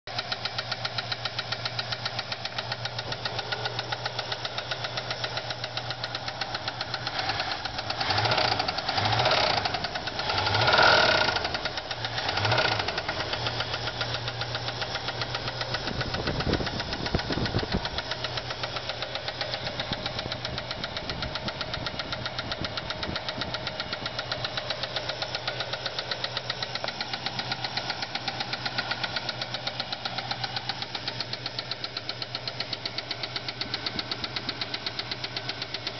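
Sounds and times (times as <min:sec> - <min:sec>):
car engine idling: 0:00.1 - 0:35.9
engine revving: 0:02.7 - 0:22.3.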